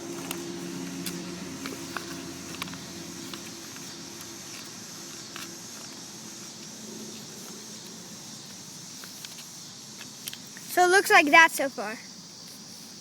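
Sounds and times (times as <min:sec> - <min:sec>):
steady low hum: 0:00.0 - 0:09.6
paper crinkling and creasing: 0:00.0 - 0:10.5.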